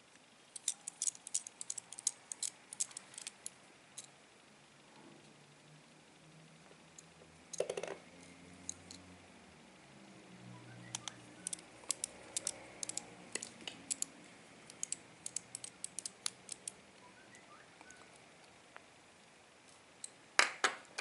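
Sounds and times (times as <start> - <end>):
screwdriver clicking on screws: 0.6 - 3.4, 10.9 - 14.1, 14.7 - 16.8.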